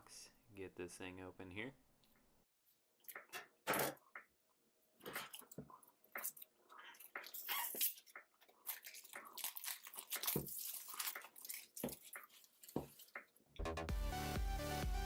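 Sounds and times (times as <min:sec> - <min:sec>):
background music with steady beat: 0:13.6 - 0:15.0.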